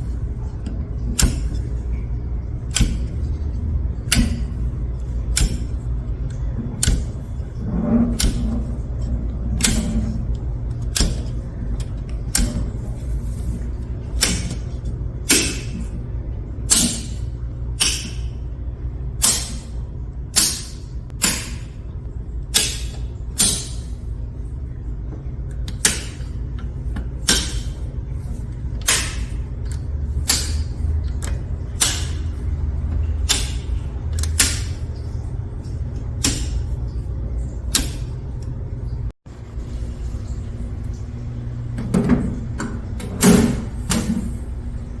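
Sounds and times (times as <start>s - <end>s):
steady low hum: 0.0s - 45.0s
circuit breakers clicking: 0.4s - 7.6s, 8.2s - 12.9s, 13.7s - 16.0s, 19.1s - 24.0s, 28.6s - 38.9s.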